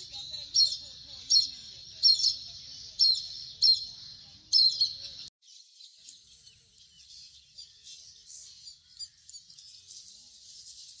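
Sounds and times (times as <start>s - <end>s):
bird chirps: 0.0s - 11.0s
high-pitched outdoor hiss: 5.6s - 11.0s.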